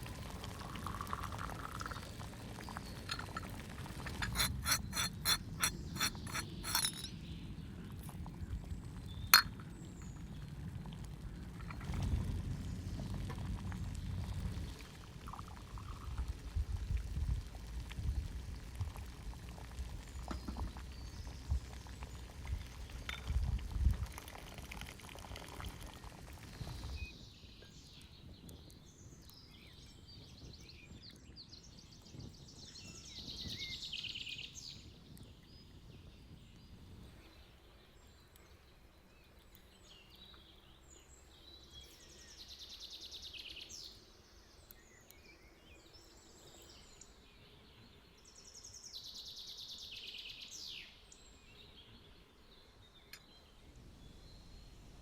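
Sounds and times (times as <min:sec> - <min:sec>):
low outdoor rumbling: 0:00.0 - 0:20.2
birds chirping: 0:00.8 - 0:07.6.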